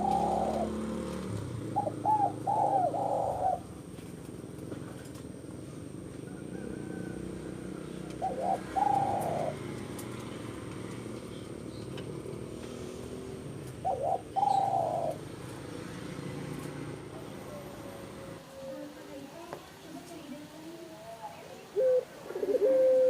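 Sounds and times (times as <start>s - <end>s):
dove cooing: 0.0s - 3.9s, 6.2s - 11.9s, 13.3s - 15.8s, 20.6s - 23.0s.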